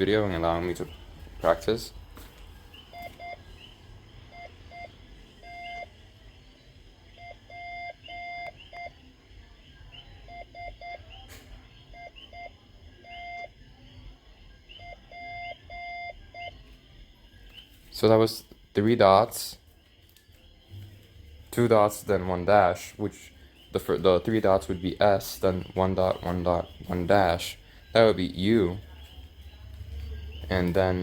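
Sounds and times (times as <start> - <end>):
morse code beeps: 2.9 - 3.4, 4.3 - 5.9, 7.2 - 8.9, 10.2 - 11.1, 11.9 - 13.5, 14.8 - 16.6.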